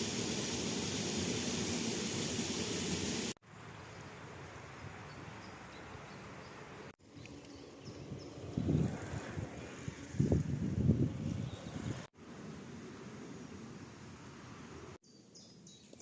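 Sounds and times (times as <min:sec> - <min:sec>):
rushing water: 0:00.0 - 0:03.4
wind gusts on microphone: 0:07.9 - 0:12.1.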